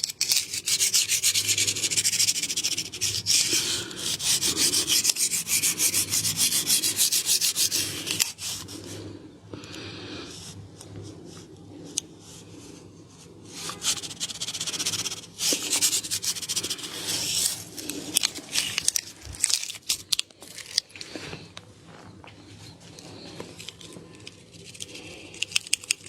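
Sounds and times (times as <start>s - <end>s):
hands rubbing skin: 0.2s - 9.0s, 13.6s - 19.6s.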